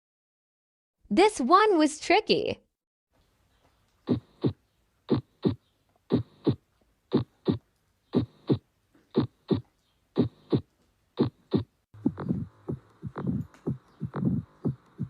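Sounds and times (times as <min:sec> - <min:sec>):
heartbeat thumps: 0:04.1 - 0:07.6, 0:08.2 - 0:15.0.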